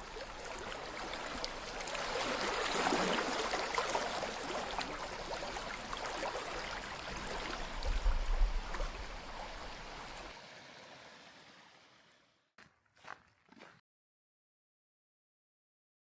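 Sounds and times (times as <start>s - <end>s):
creek water flowing: 0.0s - 12.4s.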